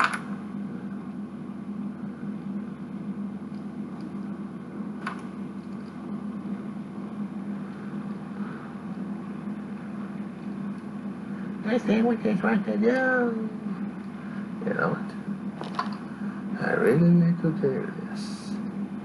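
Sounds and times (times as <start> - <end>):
machine humming: 0.0 - 19.0.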